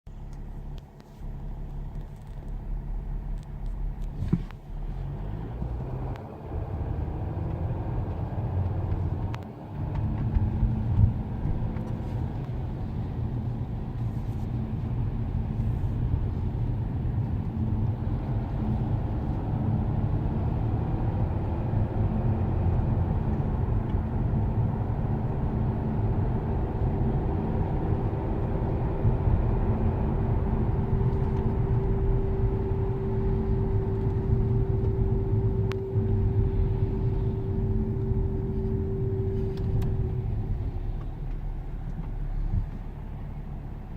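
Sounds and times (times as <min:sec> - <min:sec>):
car road noise rumble: 0:00.1 - 0:43.9.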